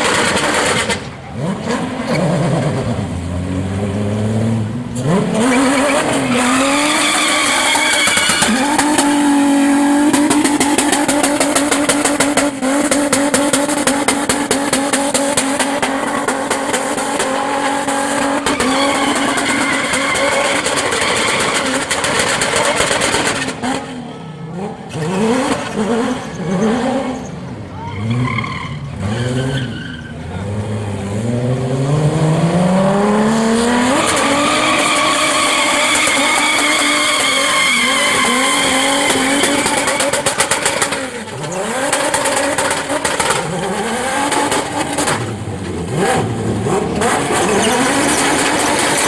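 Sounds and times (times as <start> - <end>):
car engine revving: 0.0 - 49.0
tyres squealing: 5.4 - 11.6, 18.2 - 21.9, 33.9 - 40.5.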